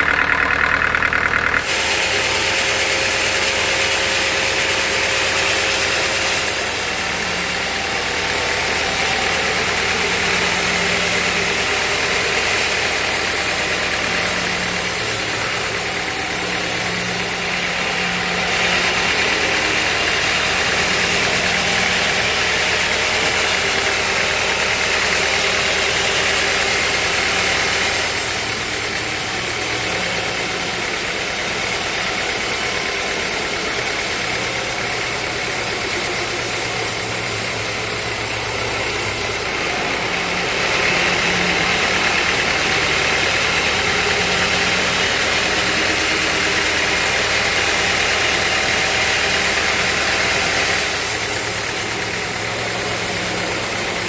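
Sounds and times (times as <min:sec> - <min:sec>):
band sawmill running: 0:00.0 - 0:54.0.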